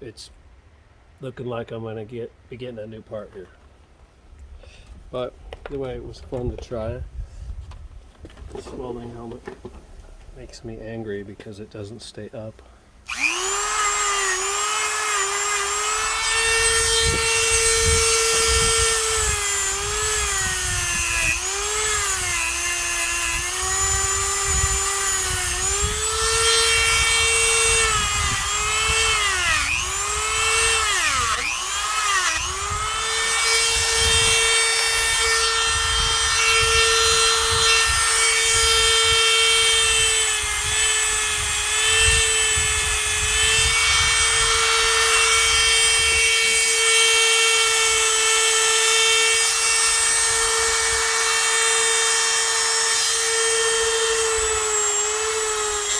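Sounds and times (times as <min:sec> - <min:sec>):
rotary tool whining on metal: 0:13.1 - 0:55.9.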